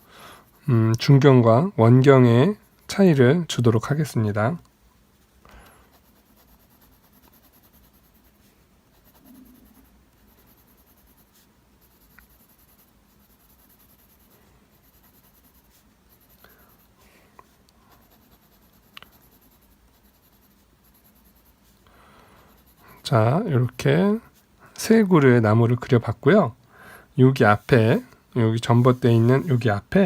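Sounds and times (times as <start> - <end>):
pencil scratching on paper: 5.8 - 17.0, 17.8 - 21.8, 22.4 - 23.4, 28.7 - 29.7
small pencil ticks: 9.0 - 16.6, 18.0 - 21.4.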